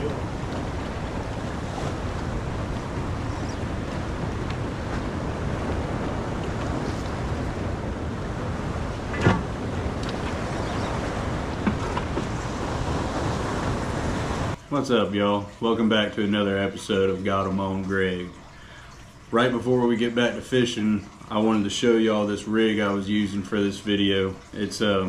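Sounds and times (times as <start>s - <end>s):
wind buffeting microphone: 0.0s - 14.6s
waves washing: 0.0s - 15.0s.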